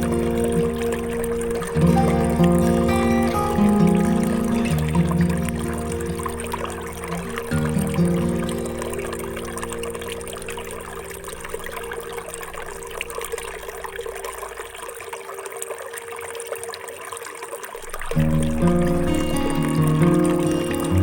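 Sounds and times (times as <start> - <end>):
background music: 0.0 - 13.8
water trickling and pouring: 0.0 - 21.0.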